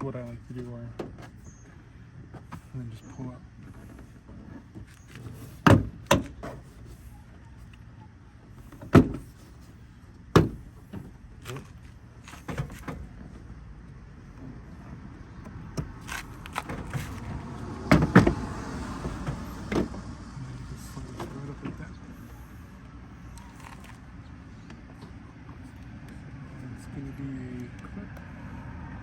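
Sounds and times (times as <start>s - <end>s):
handling noise: 15.4s - 18.5s, 23.2s - 24.1s.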